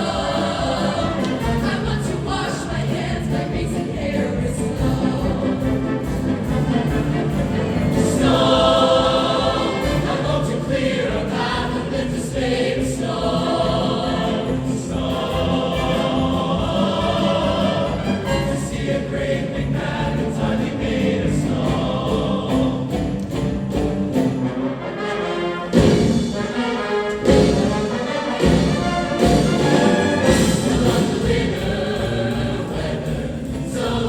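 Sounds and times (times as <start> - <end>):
choir singing long held notes: 0.0 - 23.2, 24.6 - 34.0.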